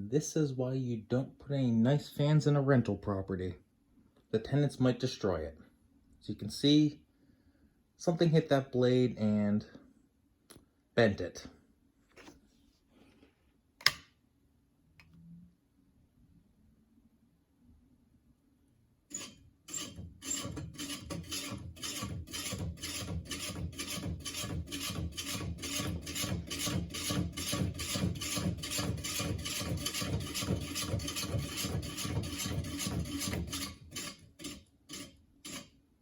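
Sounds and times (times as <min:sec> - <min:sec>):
ceiling fan blade scraping: 0:19.1 - 0:35.8.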